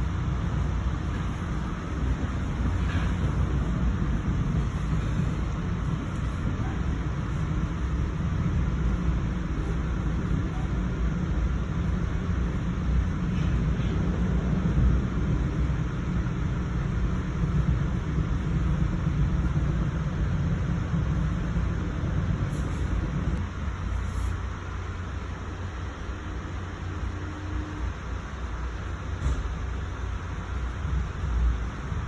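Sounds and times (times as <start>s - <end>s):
train rumbling: 0.0s - 32.0s.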